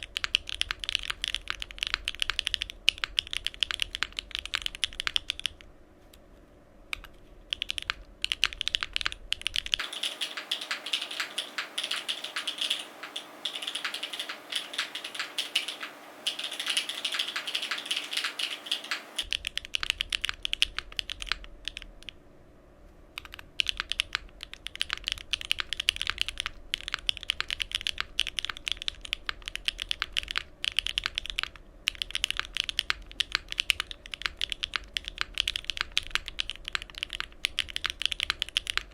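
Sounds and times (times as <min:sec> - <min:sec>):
mechanical keyboard typing: 0:00.0 - 0:05.6, 0:06.9 - 0:22.1, 0:23.2 - 0:38.9.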